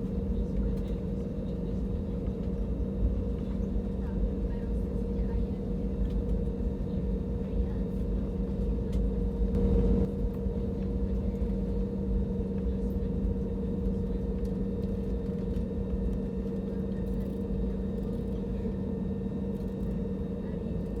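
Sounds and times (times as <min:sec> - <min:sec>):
airliner cabin engine rumble: 0:00.0 - 0:21.0
steady cabin hum: 0:05.2 - 0:12.8.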